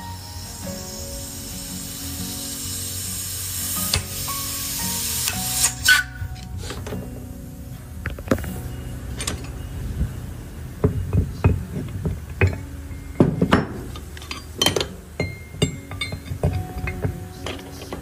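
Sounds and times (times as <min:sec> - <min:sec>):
background music: 0:00.0 - 0:18.0
metal tools clinking and knocking: 0:06.4 - 0:07.2, 0:08.0 - 0:09.7, 0:10.8 - 0:18.0.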